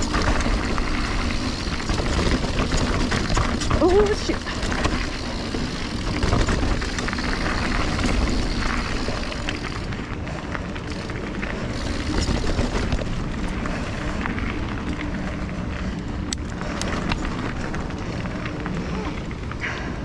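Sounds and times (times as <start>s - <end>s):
bike rattling over rocks: 0.0s - 20.0s.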